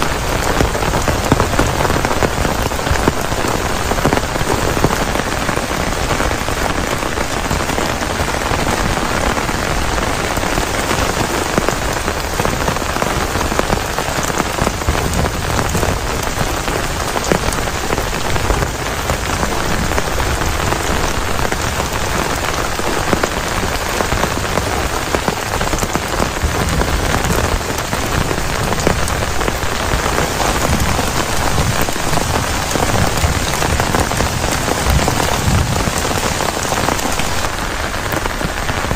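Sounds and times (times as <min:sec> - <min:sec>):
heavy rain: 0:00.0 - 0:38.9.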